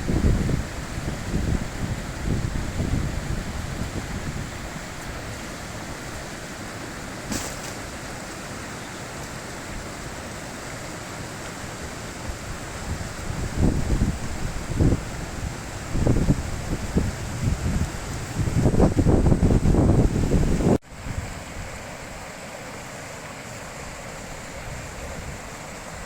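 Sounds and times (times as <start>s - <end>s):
wind buffeting microphone: 0.0s - 5.4s, 12.3s - 21.8s
river rushing: 0.0s - 26.0s.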